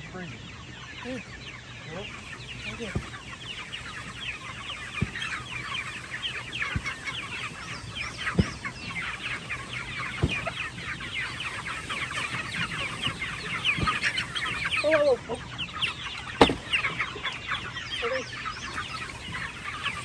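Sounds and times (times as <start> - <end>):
chickens clucking: 0.0 - 20.0
low knocks: 16.4 - 17.0.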